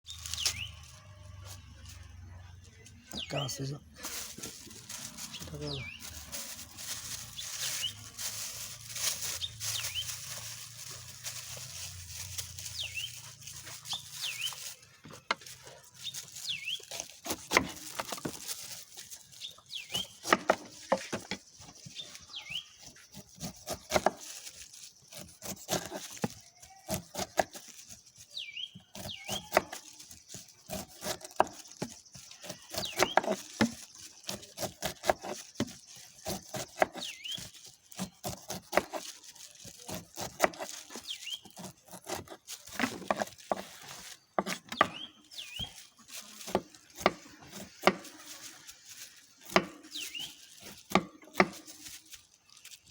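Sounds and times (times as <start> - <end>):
birds chirping: 0.1 - 51.9
knife cutting pineapple: 16.7 - 19.1, 19.9 - 21.4, 22.6 - 28.0, 28.7 - 52.2.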